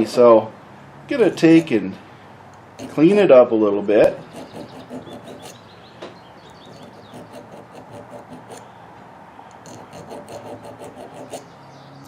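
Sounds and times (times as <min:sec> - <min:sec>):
small file scraping metal contacts: 0:01.2 - 0:01.9, 0:02.5 - 0:03.4, 0:04.0 - 0:05.7, 0:06.4 - 0:08.8, 0:09.5 - 0:11.5.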